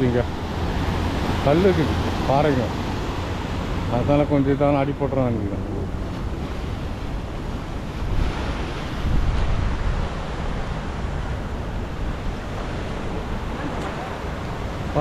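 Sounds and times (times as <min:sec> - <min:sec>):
surf washing onto rocky shore: 0:00.0 - 0:15.0
wind buffeting microphone: 0:05.2 - 0:15.0.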